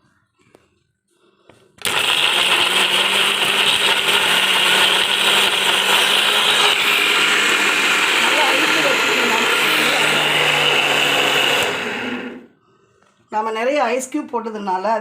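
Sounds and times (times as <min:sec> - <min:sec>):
mixer grinder running: 0:01.8 - 0:12.5.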